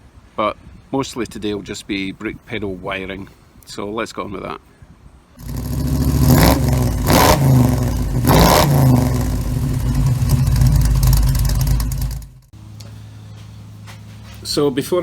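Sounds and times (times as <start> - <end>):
low steady hum: 5.3 - 14.4
car engine revving: 5.4 - 12.5.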